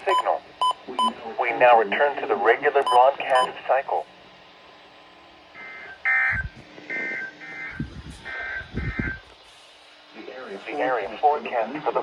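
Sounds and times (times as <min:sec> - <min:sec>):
two-tone electronic beeps: 0:00.1 - 0:01.1, 0:02.8 - 0:03.5.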